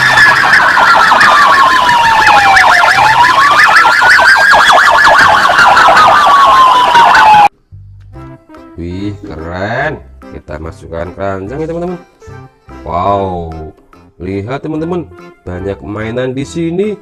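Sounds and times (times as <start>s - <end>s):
police siren wailing and warbling: 0.0s - 7.5s.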